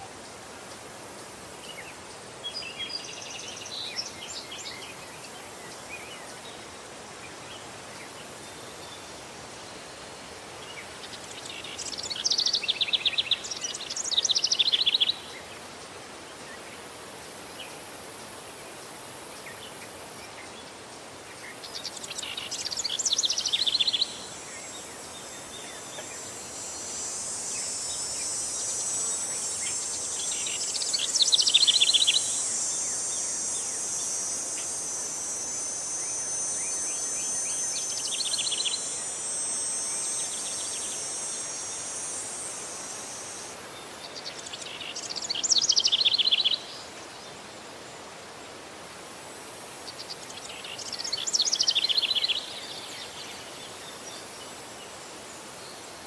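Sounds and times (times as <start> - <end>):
high insect trill: 0.0 - 56.0.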